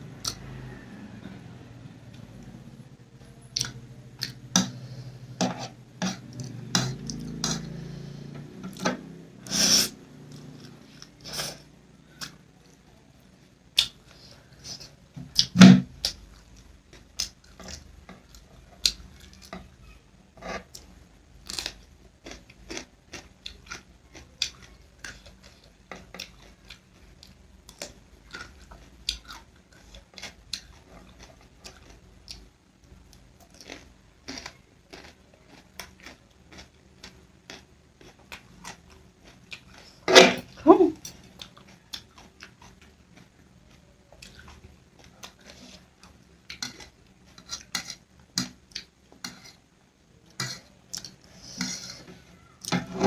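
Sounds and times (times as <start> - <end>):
chewing: 0.1 - 12.9, 13.8 - 19.7, 20.4 - 49.7, 50.3 - 52.8.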